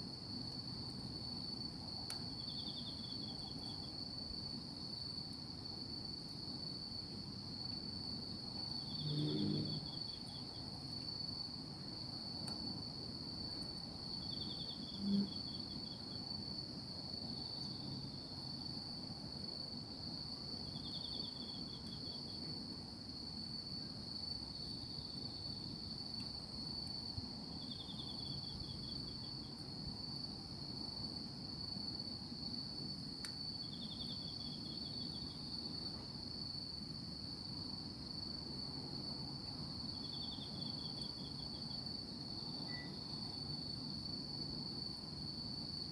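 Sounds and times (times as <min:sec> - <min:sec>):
insect high continuous trill: 0:00.0 - 0:45.9
insect pulsed chirp: 0:08.6 - 0:10.6, 0:33.4 - 0:35.6, 0:39.8 - 0:44.2.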